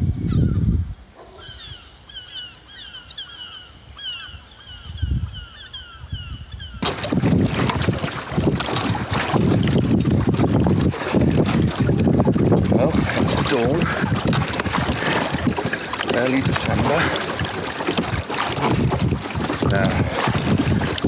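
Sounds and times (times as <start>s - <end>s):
wind buffeting microphone: 0.0s - 2.1s, 3.7s - 21.0s
bird chirping: 1.2s - 6.8s.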